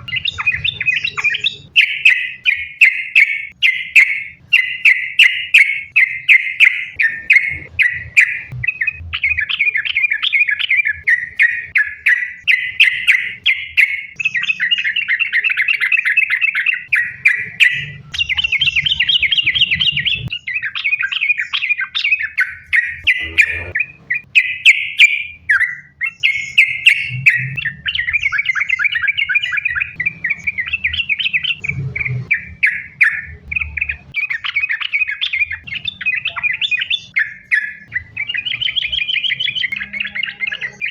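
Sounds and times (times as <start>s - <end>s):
bulbul singing chattering phrases: 0.0s - 40.9s.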